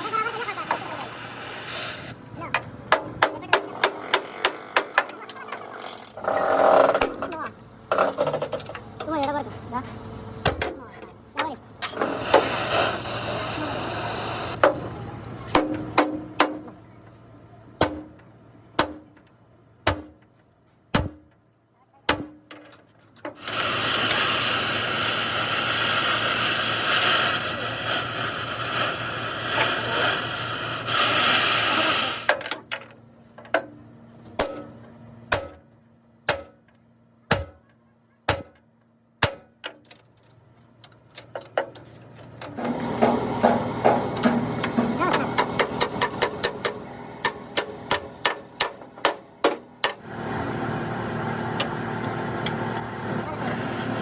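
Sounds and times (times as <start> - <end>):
loud steady noise: 23.4 - 32.3.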